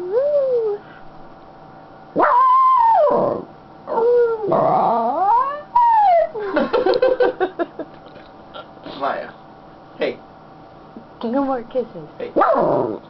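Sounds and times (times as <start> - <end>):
dog howling: 2.2 - 6.4.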